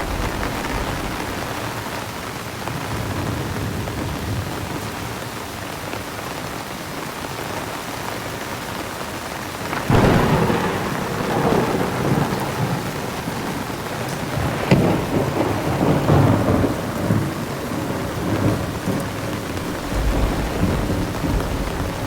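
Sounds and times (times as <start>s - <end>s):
thunderclap: 0.0s - 2.0s, 9.7s - 22.0s
heavy rain: 0.0s - 22.0s.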